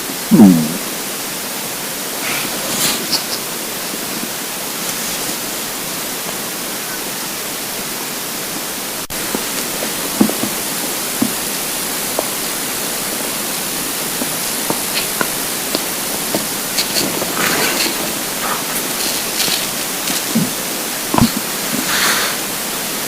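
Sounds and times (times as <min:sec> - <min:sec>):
steady hiss: 0:00.0 - 0:23.0
scratchy rustle: 0:02.2 - 0:05.6, 0:09.2 - 0:22.4
stomach gurgles and squeaks: 0:14.0 - 0:21.9.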